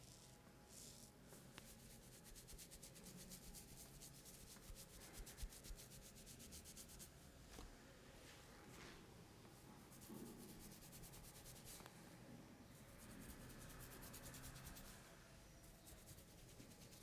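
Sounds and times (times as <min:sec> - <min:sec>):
hands rubbing skin and hair: 0:01.6 - 0:07.1.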